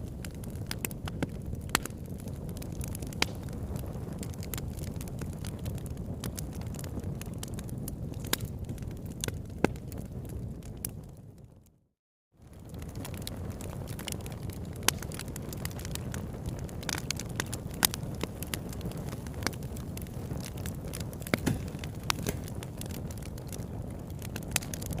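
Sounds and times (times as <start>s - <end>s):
campfire flame rushing: 0.0s - 10.9s, 12.4s - 25.0s
fire crackles and pops: 0.0s - 11.8s, 12.4s - 25.0s.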